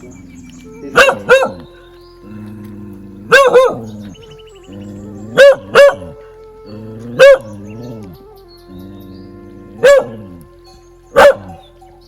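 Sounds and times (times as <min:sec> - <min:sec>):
music of low held tones: 0:00.0 - 0:12.0
dog barking: 0:00.9 - 0:01.6, 0:03.3 - 0:03.8, 0:05.4 - 0:06.1, 0:07.2 - 0:07.5, 0:09.8 - 0:10.2, 0:11.2 - 0:11.7.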